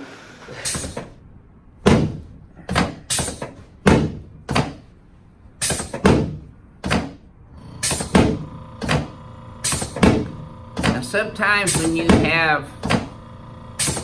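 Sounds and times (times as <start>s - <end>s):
sharp thumps: 5.6s - 14.0s.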